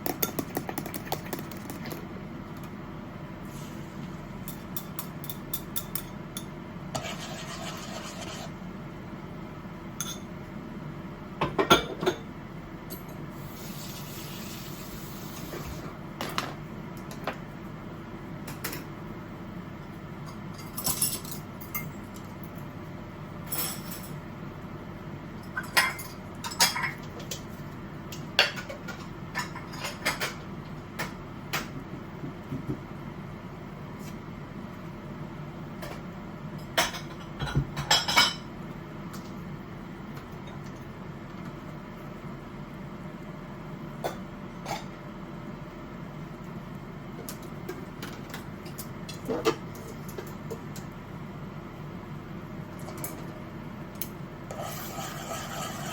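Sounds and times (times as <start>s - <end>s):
steady low hum: 0.0s - 55.9s
dishes and pots clinking: 25.5s - 27.4s, 36.6s - 38.5s.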